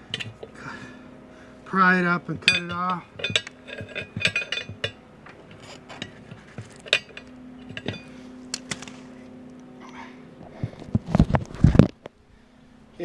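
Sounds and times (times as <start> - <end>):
metal tools clinking: 2.4 - 8.9.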